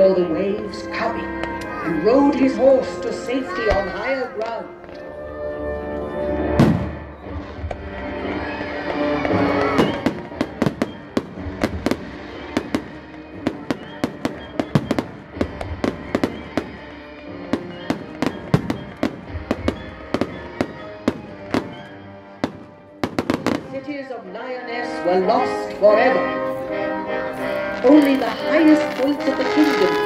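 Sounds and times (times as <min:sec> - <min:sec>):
music: 0:00.0 - 0:30.0
fireworks cracking and banging: 0:06.6 - 0:24.0, 0:27.6 - 0:30.0.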